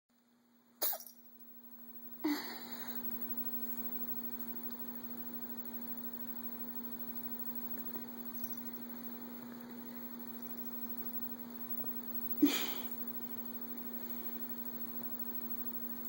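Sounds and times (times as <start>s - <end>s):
steady electrical hum: 0.2s - 16.0s
kitten sneezing: 0.8s - 1.1s.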